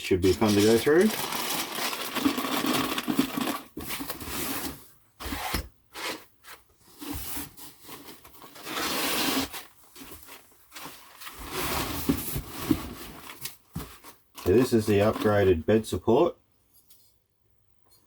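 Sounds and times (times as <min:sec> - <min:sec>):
packaging rustling and scraping: 0:00.0 - 0:15.5.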